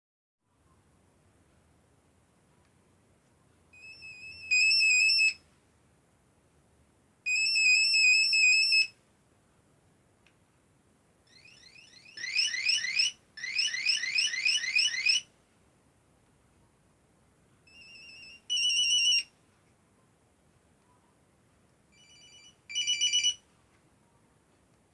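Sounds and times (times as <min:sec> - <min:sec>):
monophonic phone ringtones: 0:11.3 - 0:15.3, 0:17.7 - 0:19.3, 0:21.9 - 0:23.4.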